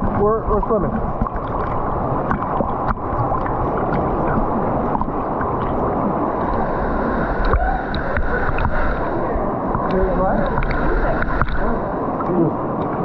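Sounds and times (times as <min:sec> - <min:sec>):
small splashes and clicks: 0:00.0 - 0:06.6, 0:09.7 - 0:13.0
steady rushing noise: 0:00.0 - 0:13.0
water swishing and sloshing: 0:00.0 - 0:13.0.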